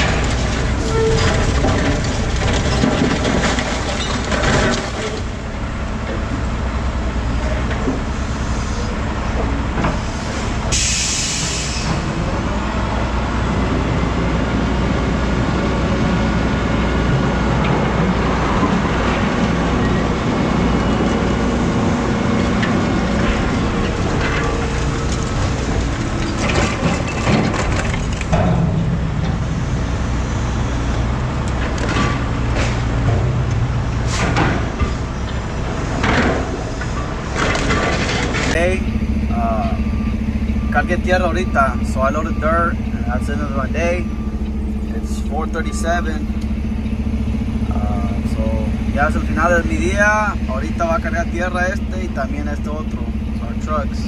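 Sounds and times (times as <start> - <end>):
diesel truck running: 0.0 - 54.0
air hiss burst: 10.7 - 11.9.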